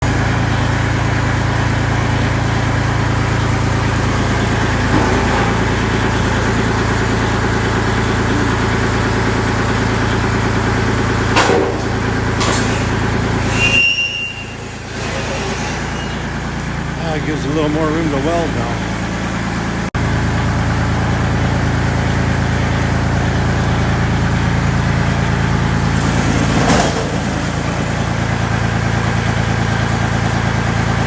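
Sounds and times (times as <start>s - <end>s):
engine idling: 0.0s - 31.0s.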